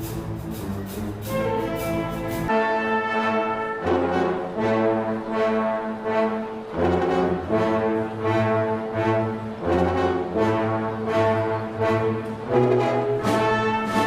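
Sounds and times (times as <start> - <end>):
low bass line: 0.0 - 2.5.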